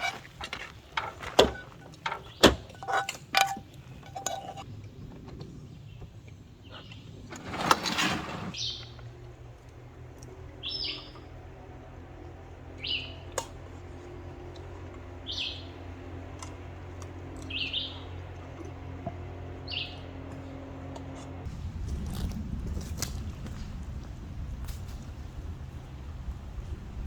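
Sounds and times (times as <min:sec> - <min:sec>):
metal utensil scraping a frying pan: 0:02.8 - 0:04.6.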